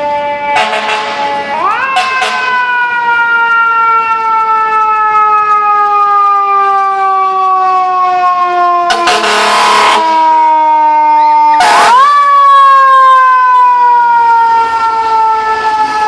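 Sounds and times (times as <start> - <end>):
fire truck siren wailing: 0.0 - 16.0
air horn blast: 0.6 - 1.2, 2.0 - 2.6, 8.9 - 10.2, 11.6 - 12.0.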